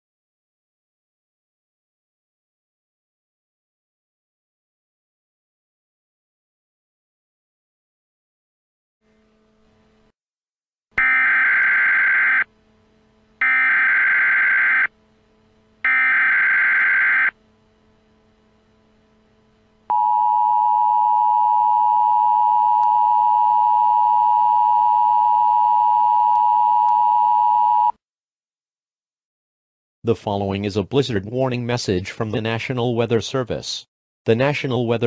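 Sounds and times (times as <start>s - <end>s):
digital data tone bursts: 15.9s - 17.3s.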